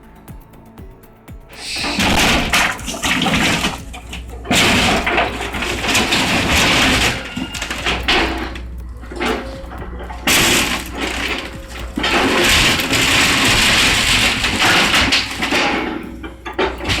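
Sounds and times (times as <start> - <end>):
debris crashing down: 1.8 - 17.0.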